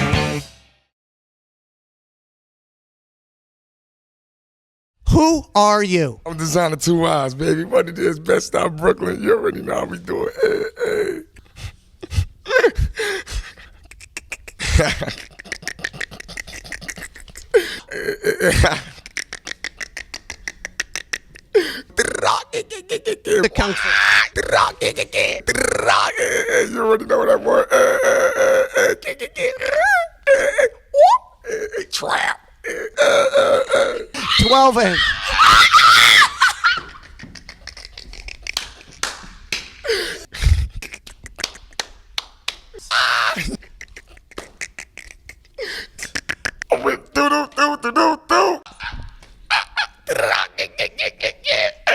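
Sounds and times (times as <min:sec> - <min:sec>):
man's drawn-out vocal cry: 0:07.4 - 0:11.4, 0:16.8 - 0:18.9, 0:21.5 - 0:36.8, 0:42.8 - 0:43.7, 0:45.6 - 0:51.9
hissing breaths: 0:11.3 - 0:13.9, 0:21.3 - 0:23.0, 0:44.8 - 0:46.2
mouth clicks and smacks: 0:13.4 - 0:17.6, 0:18.7 - 0:22.5, 0:37.3 - 0:46.8.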